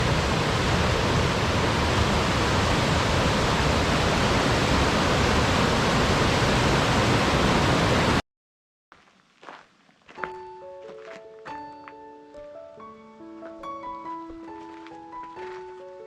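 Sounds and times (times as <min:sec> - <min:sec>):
loud rushing noise: 0:00.0 - 0:08.2.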